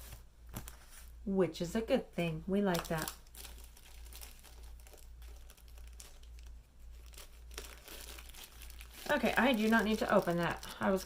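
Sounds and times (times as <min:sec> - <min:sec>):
plastic packaging crinkling: 0:02.7 - 0:11.0.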